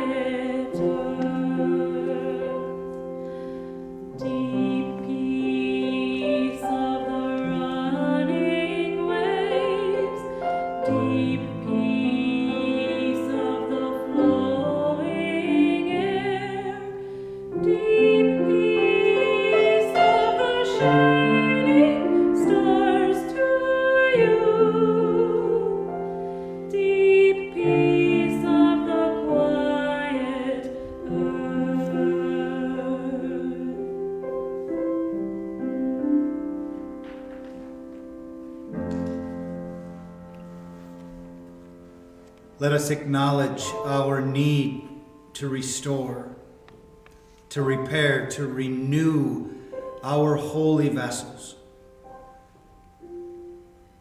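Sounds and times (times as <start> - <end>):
choir singing held chords: 0.0 - 34.8.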